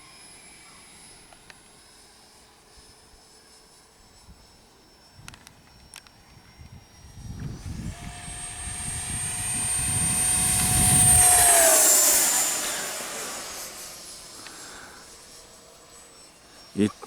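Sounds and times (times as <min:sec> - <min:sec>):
electric ducted fan whine passing: 0:06.8 - 0:16.9.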